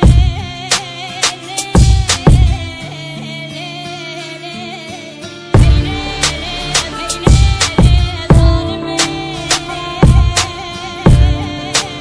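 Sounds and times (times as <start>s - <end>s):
heavy kick drums: 0.0s - 0.5s, 1.8s - 2.6s, 5.6s - 12.0s
hip hop beat: 0.0s - 12.0s
wavering held melody: 5.6s - 12.0s.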